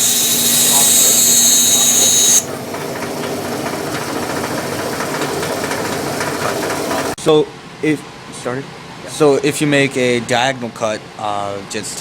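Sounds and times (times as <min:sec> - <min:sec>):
bandsaw cutting with hiss and whine: 0:00.0 - 0:02.6
bandsaw running free hum: 0:00.0 - 0:07.2.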